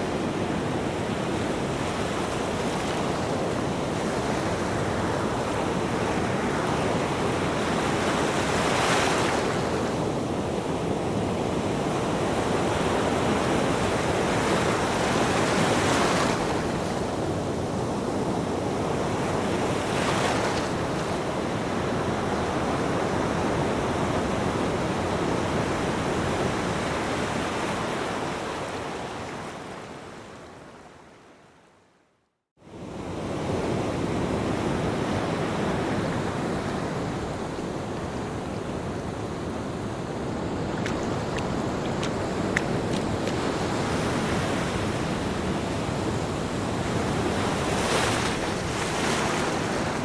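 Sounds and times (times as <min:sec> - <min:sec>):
ocean surf on beach: 0:00.0 - 0:31.2, 0:32.6 - 0:50.0
waves breaking: 0:35.1 - 0:50.0.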